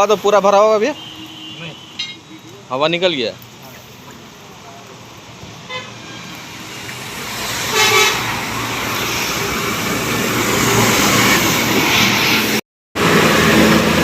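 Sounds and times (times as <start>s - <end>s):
road traffic noise: 0.0s - 14.0s
vehicle horn toots: 0.9s - 2.4s, 7.7s - 8.3s.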